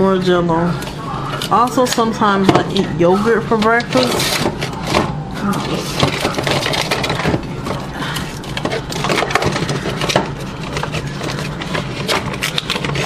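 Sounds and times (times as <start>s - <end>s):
steady low hum: 0.0s - 13.0s
food containers clicking and knocking: 3.6s - 13.0s.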